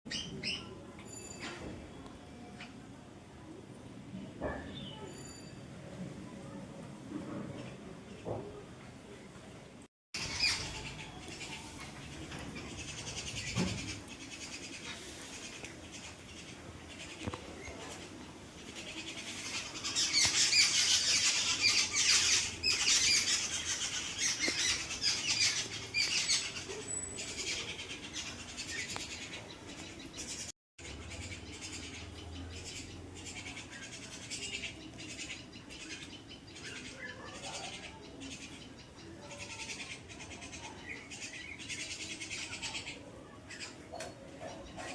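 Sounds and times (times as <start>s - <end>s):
small birds chirping: 10.2s - 44.9s.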